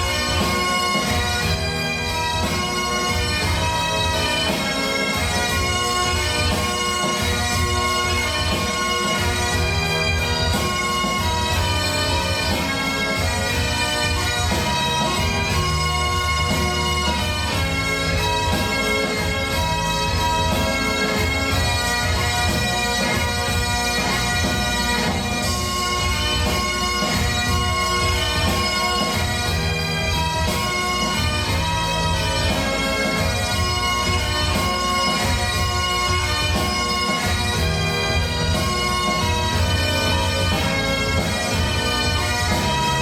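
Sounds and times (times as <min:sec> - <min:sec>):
bagpipes playing melody: 0:00.0 - 0:43.0
pipe band drums: 0:00.0 - 0:43.0.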